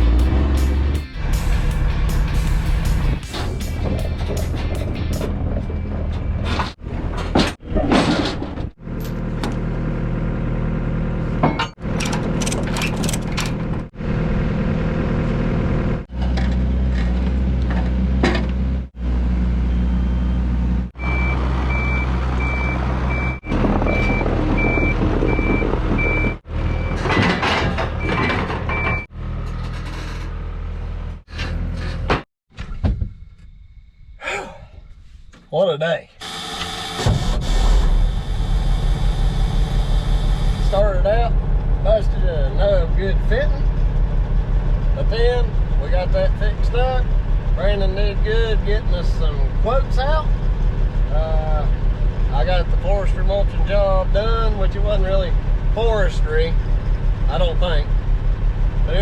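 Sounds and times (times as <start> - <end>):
heavy diesel machinery running: 0.0 - 32.0, 36.2 - 59.0
backup alarm beeping: 21.0 - 27.0.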